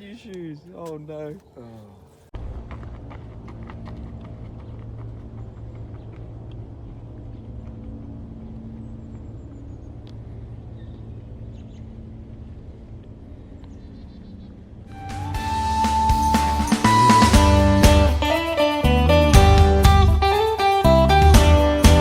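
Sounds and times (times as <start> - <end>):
steady low rumble: 2.3 - 15.0.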